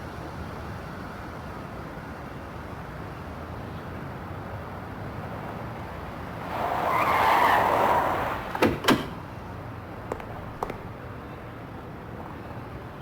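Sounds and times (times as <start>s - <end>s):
skidding sound: 6.2s - 9.4s
sharp knocks: 8.5s - 9.2s, 10.1s - 11.0s.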